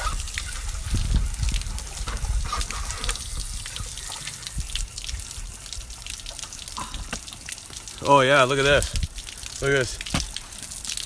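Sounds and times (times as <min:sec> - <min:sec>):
water gushing and splashing on ground: 0:00.0 - 0:11.0.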